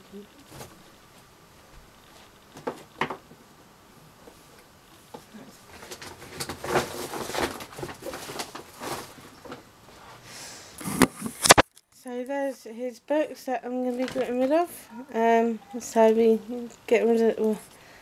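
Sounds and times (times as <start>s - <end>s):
book pages rustling: 10.8s - 11.7s.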